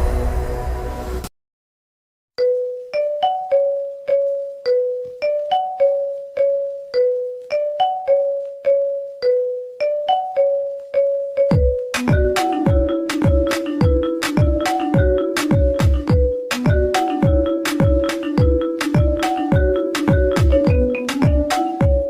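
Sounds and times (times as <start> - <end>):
electronic ringtone melody: 2.4 - 22.0
deep thumping beats: 11.5 - 22.0.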